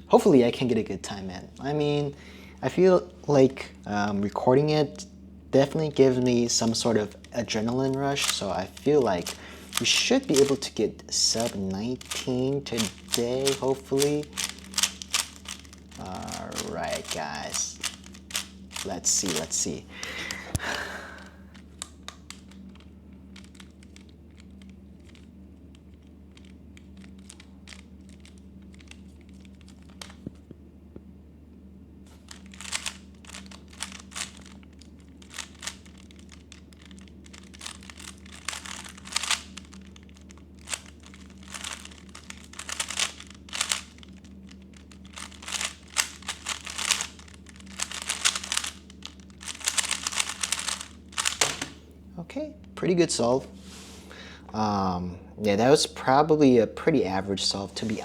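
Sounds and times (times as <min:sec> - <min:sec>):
puzzle cube plastic clicks and rattles: 0:06.5 - 0:20.4, 0:21.6 - 0:25.3, 0:25.9 - 0:30.2, 0:32.3 - 0:51.8.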